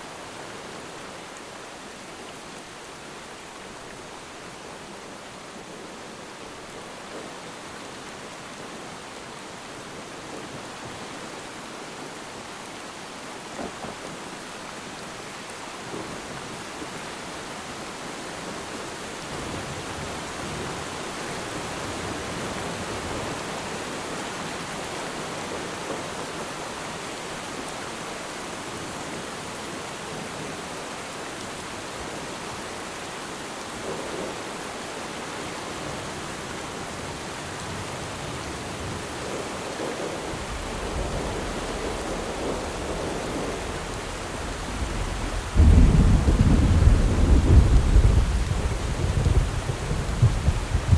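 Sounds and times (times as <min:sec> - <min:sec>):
rain falling on water: 0:00.0 - 0:50.9
distant thunder rumble: 0:37.7 - 0:50.9.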